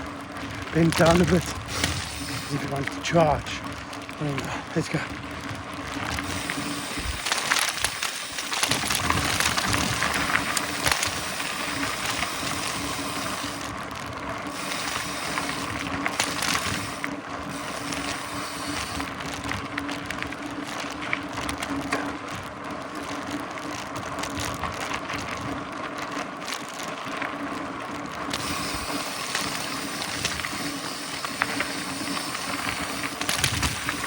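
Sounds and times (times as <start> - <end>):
steady hum: 0.0 - 20.5, 28.3 - 34.0
bike rattling over rough ground: 0.0 - 34.0
bike tyres rolling: 0.0 - 34.0.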